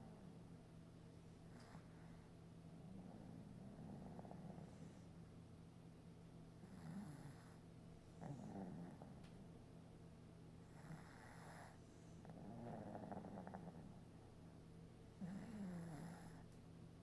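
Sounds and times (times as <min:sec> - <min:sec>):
steady low hum: 0:00.0 - 0:17.0
faint snoring: 0:02.8 - 0:05.1, 0:06.6 - 0:07.6, 0:08.2 - 0:09.4, 0:10.6 - 0:14.0, 0:15.2 - 0:16.6.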